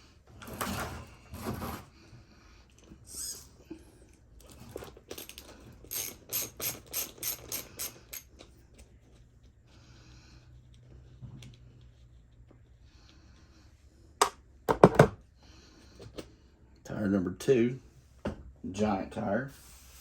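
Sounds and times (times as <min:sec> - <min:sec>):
scraping rustles of hand tools: 0:00.4 - 0:02.0.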